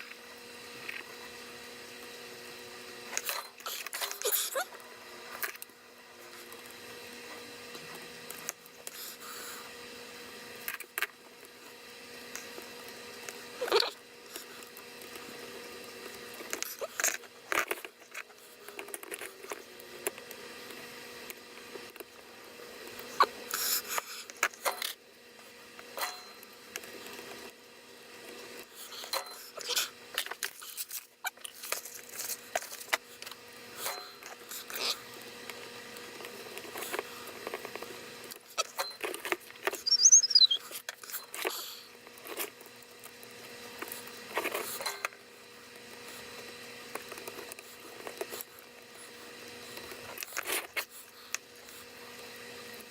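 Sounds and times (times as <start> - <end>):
hand tools clicking and scraping: 16.0 - 20.3, 28.5 - 43.2
high falling squeak: 39.8 - 40.6.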